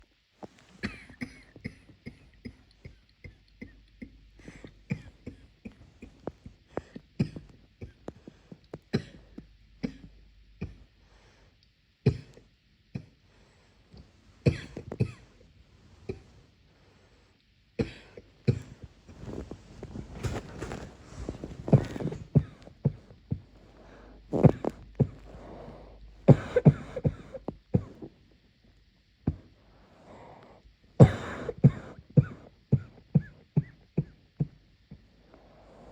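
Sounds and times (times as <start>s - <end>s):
person coughing: 0.8s - 6.2s, 8.9s - 10.8s, 14.5s - 15.4s, 20.2s - 23.0s, 26.3s - 28.1s, 31.0s - 34.6s.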